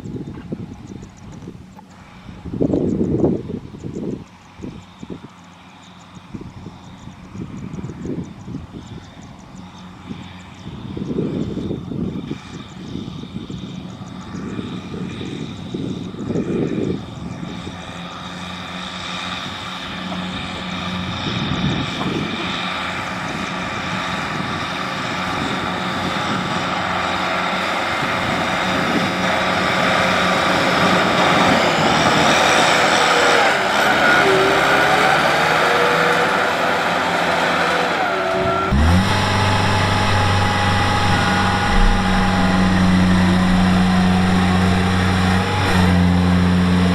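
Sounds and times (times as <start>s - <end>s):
diesel engine running: 12.7s - 46.9s.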